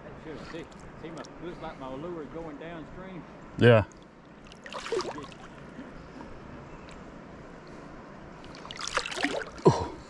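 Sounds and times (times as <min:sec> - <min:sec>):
water splashing: 0:03.9 - 0:05.8, 0:08.4 - 0:09.8.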